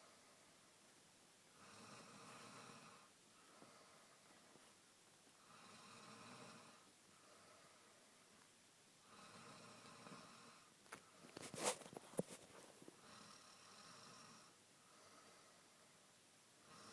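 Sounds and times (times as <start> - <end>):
man snoring softly: 1.5 - 4.0, 5.4 - 7.6, 9.0 - 10.8, 12.8 - 15.8, 16.6 - 16.9.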